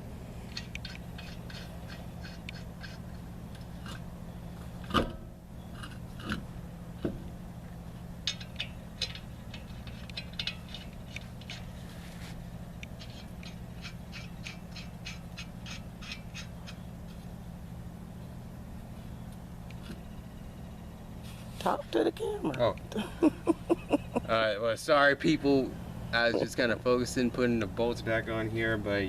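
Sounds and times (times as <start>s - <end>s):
steady low hum: 0.0s - 29.0s
lug nuts clicking and scraping: 0.4s - 17.6s, 18.2s - 21.6s.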